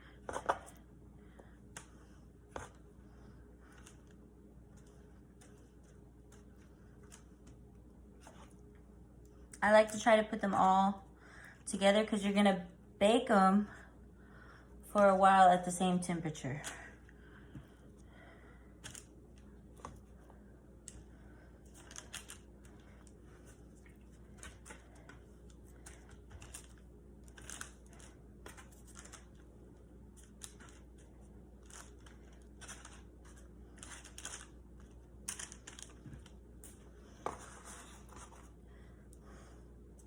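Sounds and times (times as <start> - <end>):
paper crinkling: 21.6 - 29.5, 30.1 - 38.6.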